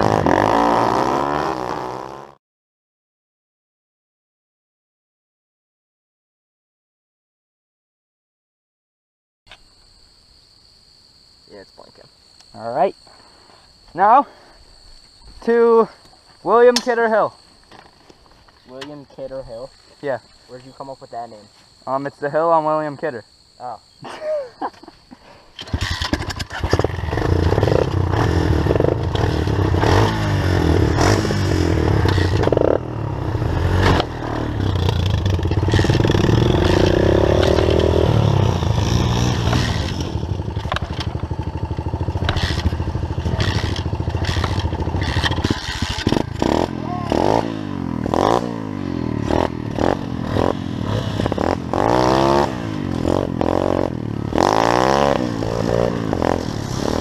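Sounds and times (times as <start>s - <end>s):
motorbike engine revving: 0.0s - 2.4s, 25.6s - 57.0s
bike clattering over rough ground: 25.6s - 27.0s, 40.5s - 41.4s, 42.0s - 46.5s.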